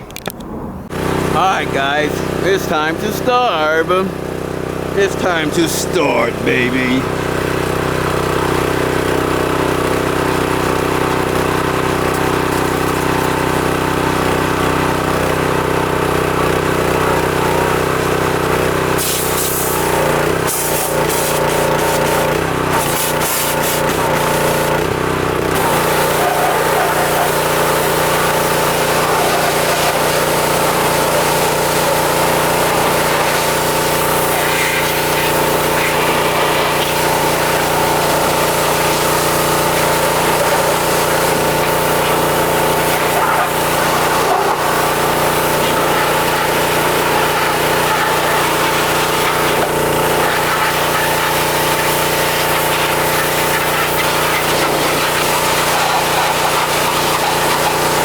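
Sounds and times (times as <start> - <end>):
pressure washer motor humming: 0.9 - 58.0
water jet hissing: 18.9 - 24.8, 25.5 - 58.0.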